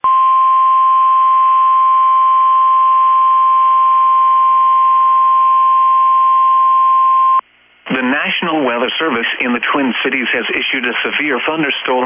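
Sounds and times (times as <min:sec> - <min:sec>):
faint radio hiss: 0:07.4 - 0:12.0.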